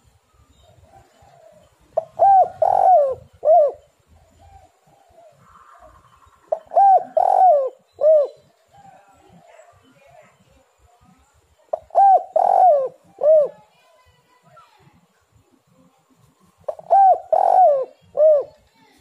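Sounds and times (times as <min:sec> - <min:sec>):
dove cooing: 0:00.6 - 0:10.0, 0:11.7 - 0:13.7, 0:16.5 - 0:18.6.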